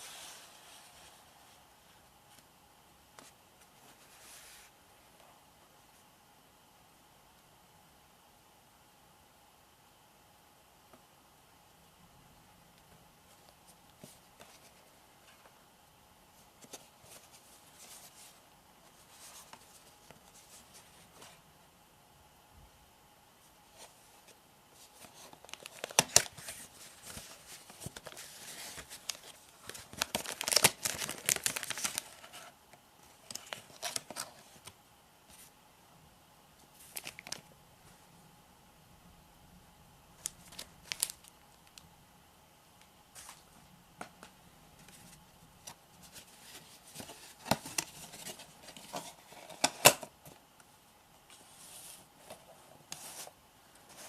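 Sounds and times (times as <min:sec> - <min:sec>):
wrapping paper tearing and crinkling: 0:25.4 - 0:32.4, 0:40.2 - 0:41.3.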